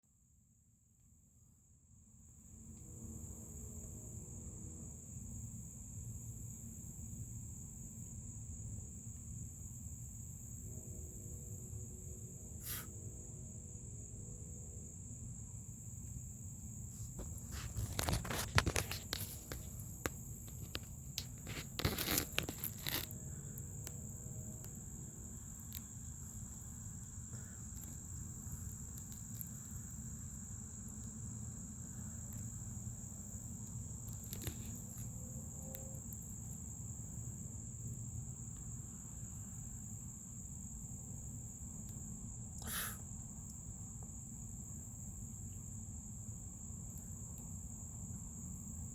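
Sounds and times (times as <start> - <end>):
brief knocks and rustles: 17.0 - 19.7.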